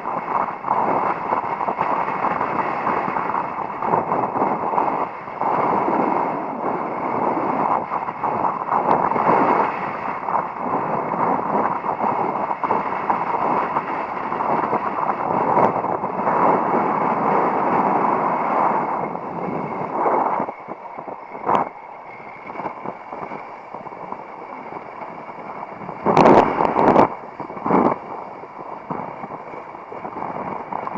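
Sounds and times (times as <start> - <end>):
strong wind: 0.0 - 30.9
water rushing: 23.8 - 30.9.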